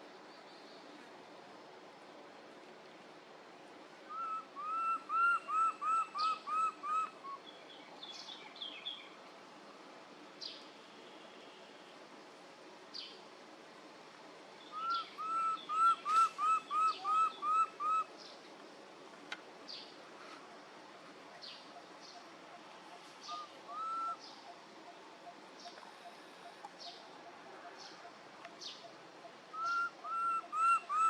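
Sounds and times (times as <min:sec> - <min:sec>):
bird hooting notes: 0:04.1 - 0:07.4, 0:14.7 - 0:18.1, 0:21.7 - 0:26.6, 0:28.8 - 0:31.0.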